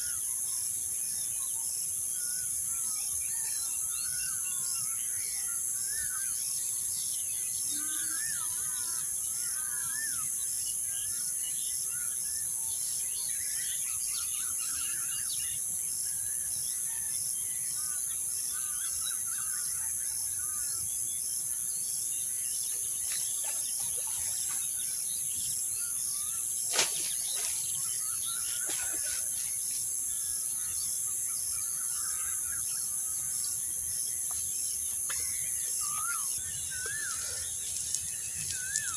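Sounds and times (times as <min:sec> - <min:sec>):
high insect drone: 0:21.8 - 0:38.9
small birds chirping: 0:22.2 - 0:38.9.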